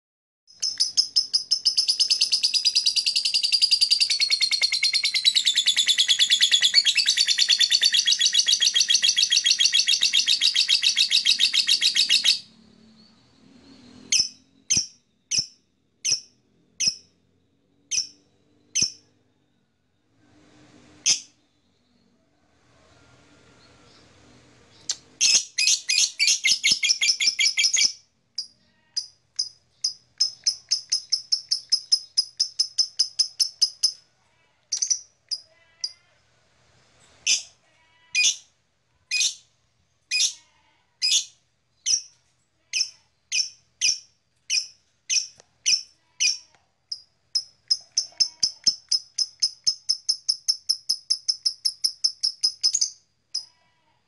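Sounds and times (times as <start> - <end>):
lovebird chattering chirps: 0.5 - 12.4, 24.9 - 34.0, 42.7 - 53.5.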